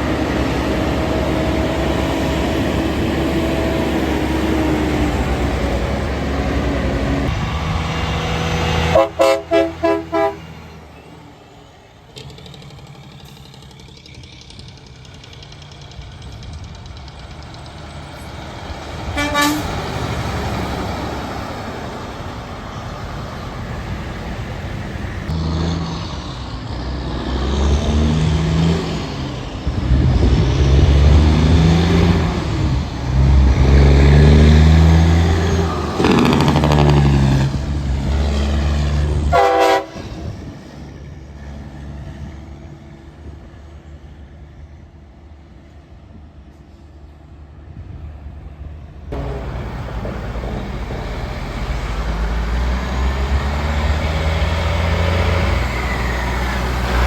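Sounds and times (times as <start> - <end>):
diesel truck engine pulling hard: 0.0 - 57.0
truck horn toot: 8.7 - 10.7, 19.1 - 20.0, 39.2 - 40.2.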